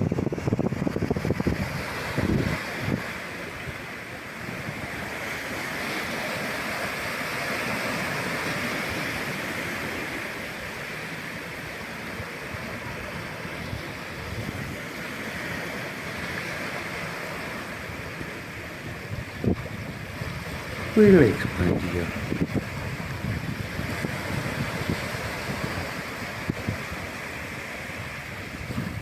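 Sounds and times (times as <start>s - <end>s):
wind on microphone: 0.0s - 3.8s, 18.8s - 29.0s
surf breaking on shore: 0.0s - 29.0s.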